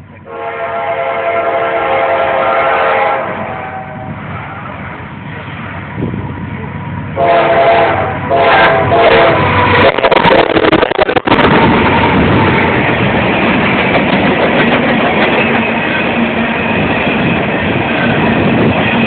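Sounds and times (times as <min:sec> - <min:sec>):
rumble of train cars rolling: 0:00.0 - 0:19.0
train passing with rushing noise: 0:00.0 - 0:19.0
train air horn blasts: 0:00.2 - 0:04.8, 0:07.2 - 0:10.9.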